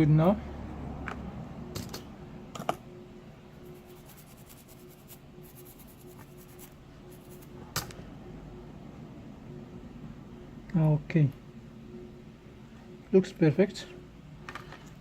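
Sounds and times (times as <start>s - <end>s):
faint steady hum: 0.0s - 15.0s
hand tool scratching: 3.7s - 7.5s.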